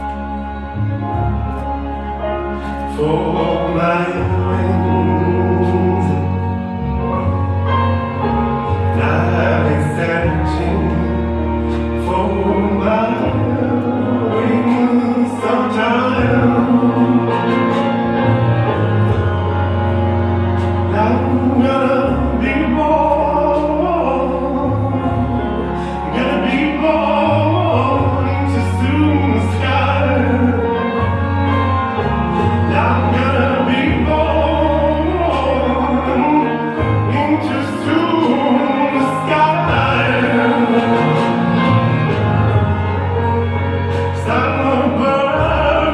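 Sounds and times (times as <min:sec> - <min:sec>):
long held bass notes: 0:00.0 - 0:45.9
person singing: 0:00.0 - 0:45.9.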